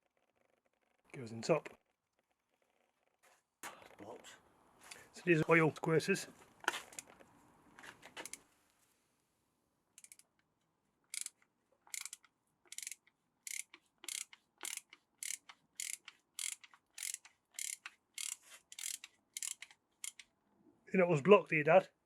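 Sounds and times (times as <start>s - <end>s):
small mechanism clicking: 10.0s - 10.3s, 11.1s - 20.3s.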